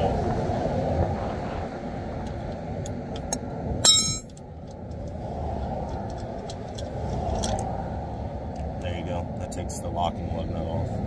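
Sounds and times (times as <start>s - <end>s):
passing traffic: 0.0s - 11.0s
sharp metallic clink: 3.3s - 4.5s.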